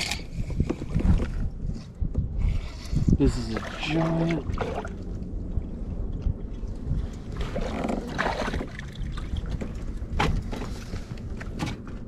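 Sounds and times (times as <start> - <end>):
movement knocks on kayak hull: 9.5 - 10.8.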